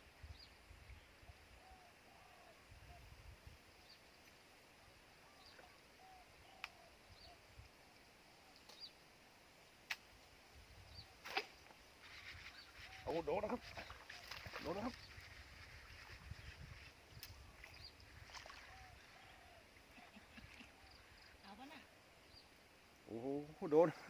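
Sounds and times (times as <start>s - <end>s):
faint bird chirps: 3.8s - 9.0s, 10.6s - 24.0s
light wind rumble: 9.5s - 23.7s.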